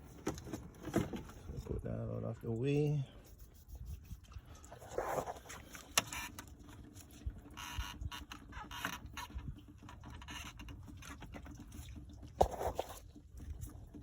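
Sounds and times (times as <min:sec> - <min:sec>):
hoses and parts being handled: 0:00.0 - 0:01.8, 0:02.4 - 0:13.8.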